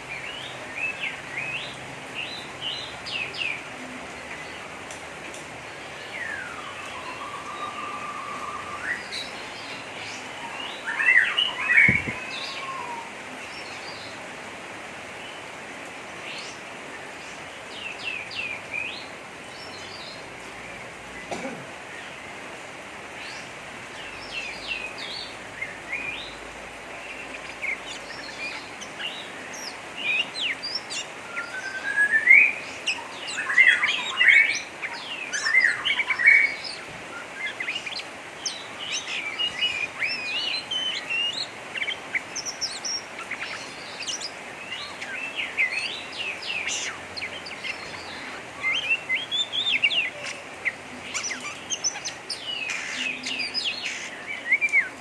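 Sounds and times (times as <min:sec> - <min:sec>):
steady hiss: 0:00.0 - 0:55.0
bird chattering calls: 0:37.4 - 0:54.6.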